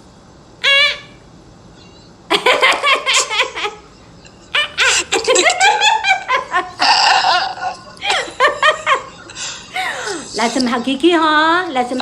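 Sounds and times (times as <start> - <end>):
loud high-pitched laughter: 2.3 - 3.8, 4.6 - 10.2.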